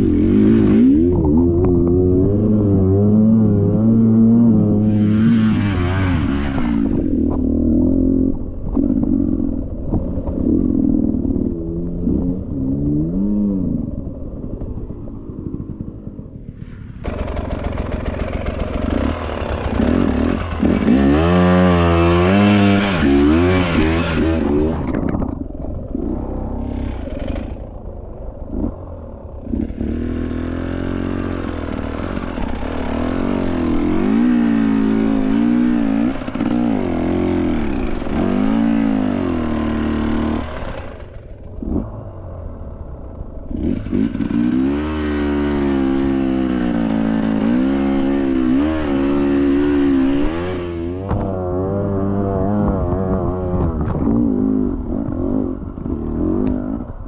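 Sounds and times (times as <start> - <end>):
dirt bike engine revving: 0.0 - 57.0.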